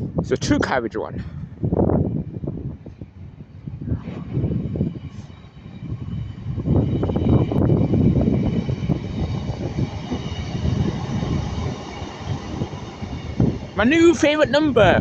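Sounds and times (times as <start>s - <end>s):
diesel train rumble with knocks: 4.4s - 15.0s.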